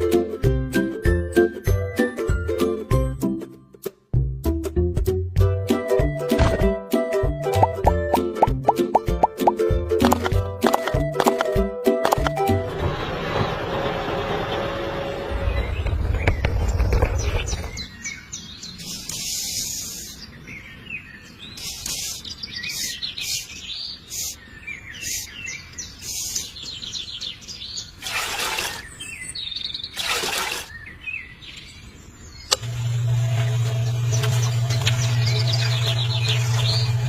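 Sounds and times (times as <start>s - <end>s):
birds chirping and singing: 14.5s - 32.6s, 33.4s - 37.0s.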